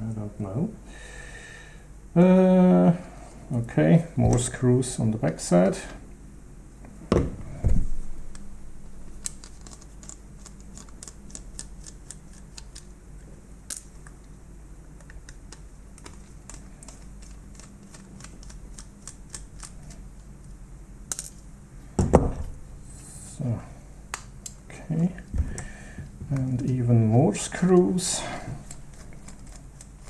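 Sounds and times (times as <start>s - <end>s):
heavier knocks on housing: 22.0s - 22.6s.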